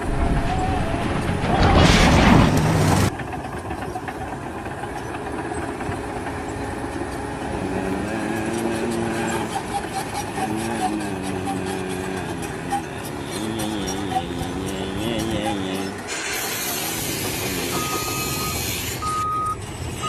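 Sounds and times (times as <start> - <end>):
loud noise: 0.0 - 3.1
engine running steadily: 0.0 - 20.0.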